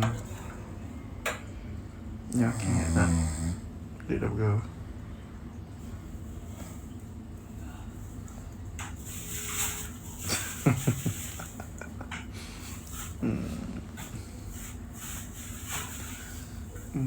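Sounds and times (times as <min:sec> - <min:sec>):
person snoring loudly: 0:02.3 - 0:03.7, 0:13.2 - 0:14.1.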